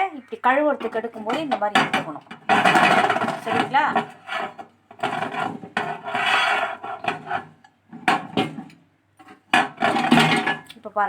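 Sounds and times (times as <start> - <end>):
turntable plate scraping oven floor: 2.5 - 8.5.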